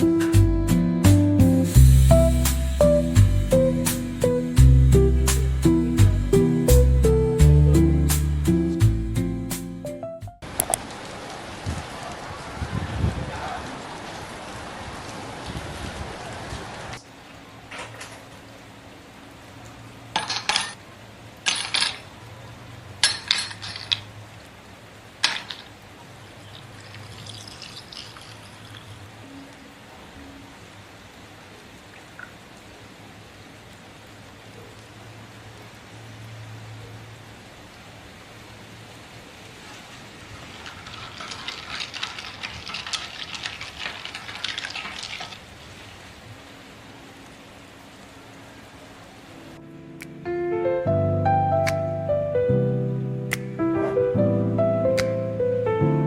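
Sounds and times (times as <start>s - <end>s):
steady rain: 0.0s - 56.0s
ice cubes clinking into glass: 21.5s - 22.0s, 23.0s - 24.1s, 26.8s - 28.9s, 40.5s - 45.4s
liquid pouring: 26.4s - 29.2s, 40.1s - 45.9s.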